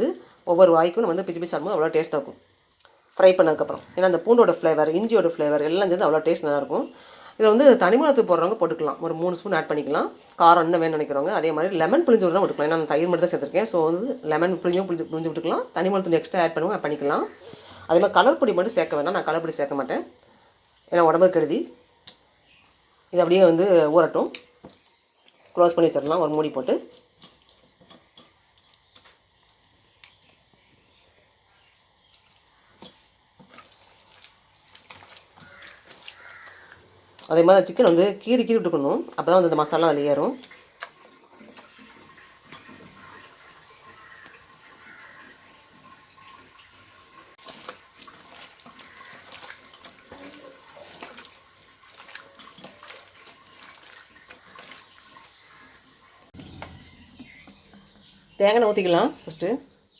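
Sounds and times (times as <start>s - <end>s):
running water: 32.2s - 59.7s.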